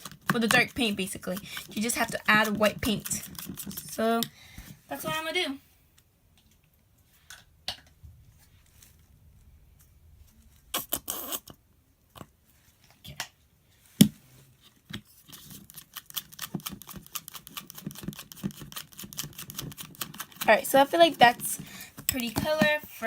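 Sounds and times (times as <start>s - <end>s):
slime being stirred: 0.0s - 5.3s, 14.7s - 23.0s.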